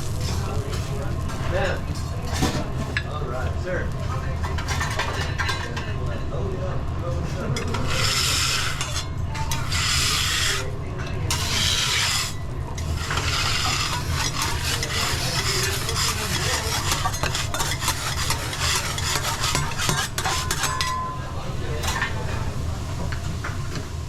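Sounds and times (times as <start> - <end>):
sizzling: 0.0 - 24.0
metal spatula scraping griddle: 4.4 - 5.8, 7.3 - 21.2.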